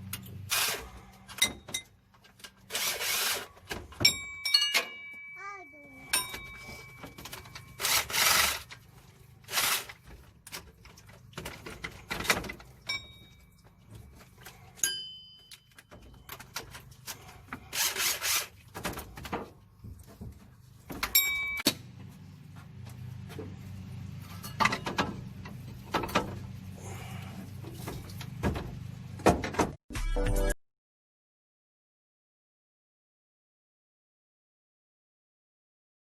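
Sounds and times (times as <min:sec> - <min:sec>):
scraping rasping bursts: 0:02.6 - 0:03.6, 0:07.7 - 0:10.1, 0:17.1 - 0:18.7
metal tool clinks and knocks: 0:04.0 - 0:07.8, 0:14.8 - 0:16.8, 0:21.0 - 0:21.8.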